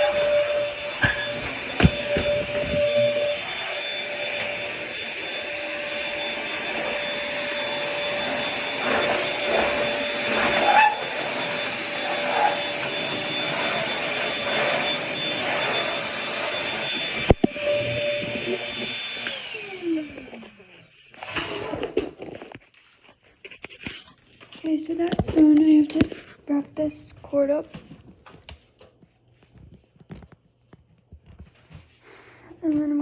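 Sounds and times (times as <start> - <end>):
vacuum cleaner whine: 0.0 - 22.4.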